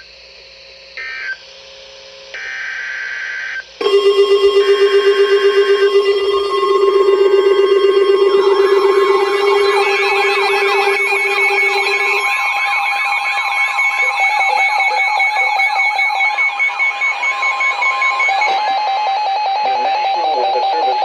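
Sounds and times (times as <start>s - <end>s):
low steady tone: 3.8s - 12.8s
steady and pulsing beeps: 3.8s - 21.0s
swept alarm tone: 3.8s - 21.0s.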